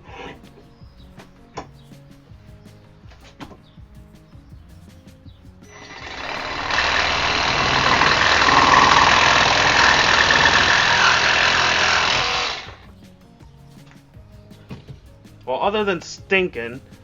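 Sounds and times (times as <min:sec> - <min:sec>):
reciprocating saw cutting metal conduit: 0:05.7 - 0:12.8.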